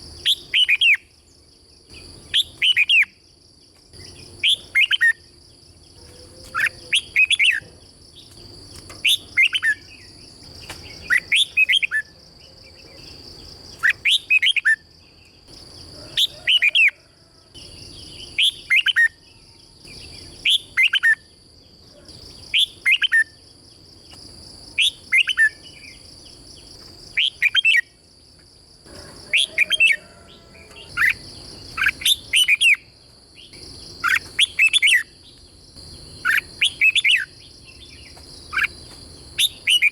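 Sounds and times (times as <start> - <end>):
steady high-pitched whine: 0.0 - 39.9.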